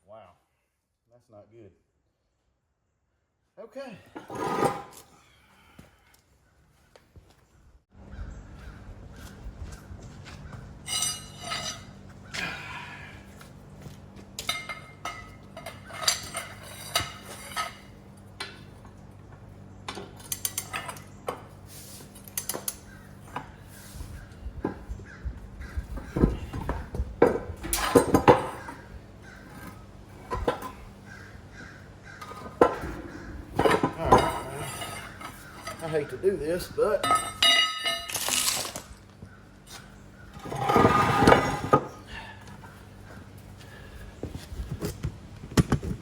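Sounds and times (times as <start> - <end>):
steady low hum: 7.9 - 46.0
metal tools clinking and clanking: 10.8 - 12.4, 14.4 - 18.8, 19.9 - 21.5, 22.1 - 22.9, 26.1 - 30.9, 32.2 - 38.8, 40.4 - 41.9.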